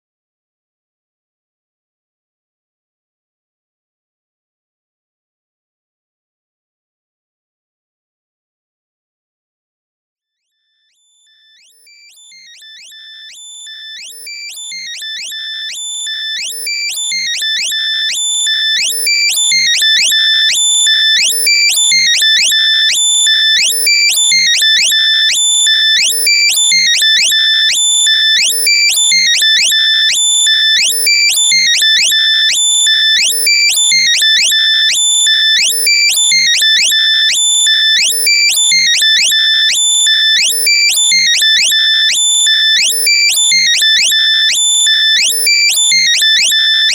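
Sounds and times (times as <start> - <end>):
shrill electronic beeps: 11.8 - 46.9.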